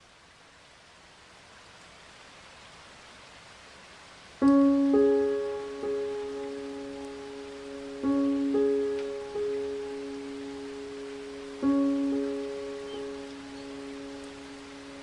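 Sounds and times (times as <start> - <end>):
faint hiss of rain: 0.0 - 15.0
slow piano music: 4.4 - 15.0.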